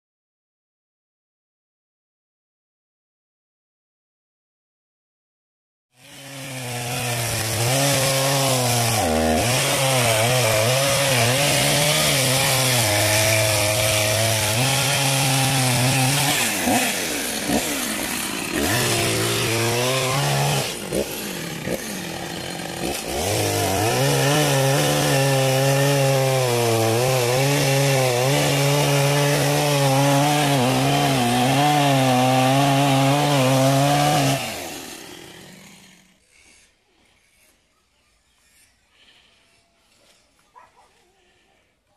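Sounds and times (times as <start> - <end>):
chainsaw cutting wood: 6.0 - 37.7.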